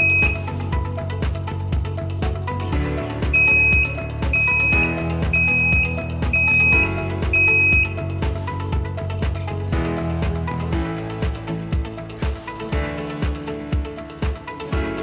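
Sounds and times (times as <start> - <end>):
high electronic beep: 0.0 - 0.6, 3.3 - 8.0
background music with beat: 0.0 - 15.0.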